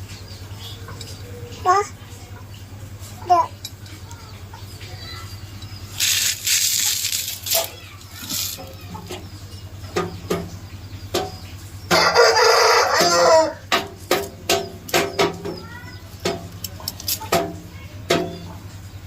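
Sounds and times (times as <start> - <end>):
rooster crowing: 11.9 - 13.7.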